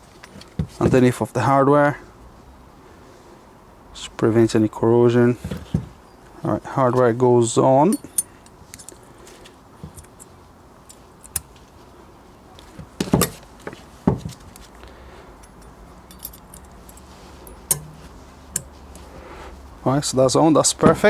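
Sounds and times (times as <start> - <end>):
light metallic clicks and clinks: 7.9 - 9.0, 9.9 - 11.5, 15.4 - 18.8
metal knocks: 13.0 - 13.4, 15.5 - 18.7.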